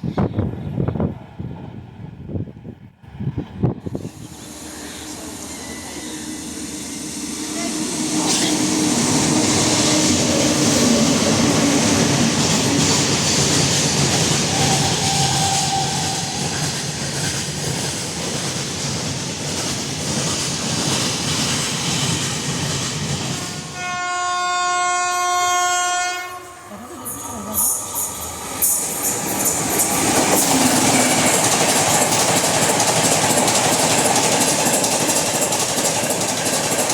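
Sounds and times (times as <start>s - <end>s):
train rumbling past: 0.0s - 36.9s
shrill train horn blast: 23.4s - 29.1s
wheels clacking over rail joints: 27.8s - 36.9s.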